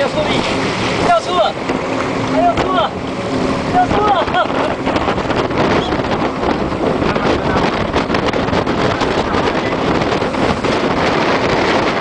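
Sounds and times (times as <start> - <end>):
boat motor running: 0.0 - 12.0
water rushing past hull: 0.0 - 12.0
wind buffeting microphone: 0.0 - 12.0.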